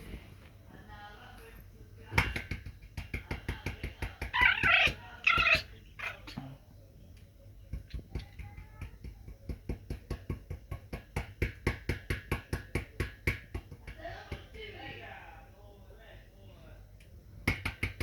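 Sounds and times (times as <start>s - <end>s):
dog high-pitched cries: 4.4s - 6.3s.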